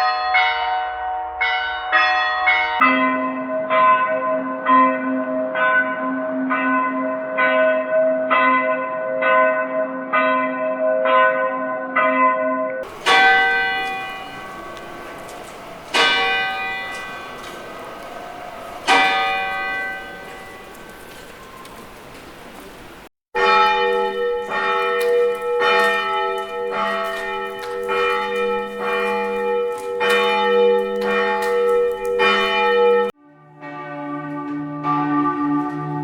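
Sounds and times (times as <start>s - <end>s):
church bells ringing: 0.0s - 36.0s
large bell tolling: 12.8s - 33.1s.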